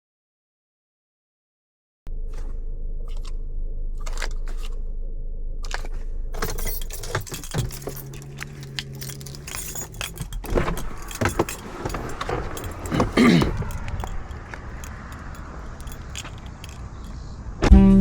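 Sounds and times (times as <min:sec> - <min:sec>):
low steady engine tone: 0:02.1 - 0:18.0
street noise: 0:05.6 - 0:18.0
metallic jangling and clicking: 0:05.7 - 0:17.4.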